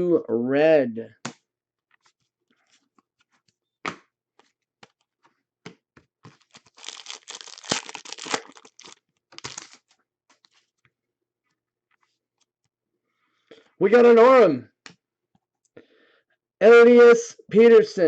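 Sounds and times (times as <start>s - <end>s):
foil wrapper tearing and crinkling: 6.4s - 9.9s.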